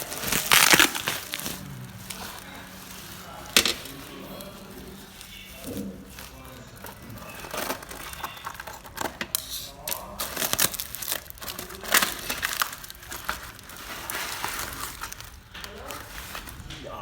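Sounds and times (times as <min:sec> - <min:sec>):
crinkling and rustling handling noise: 0:00.0 - 0:17.0.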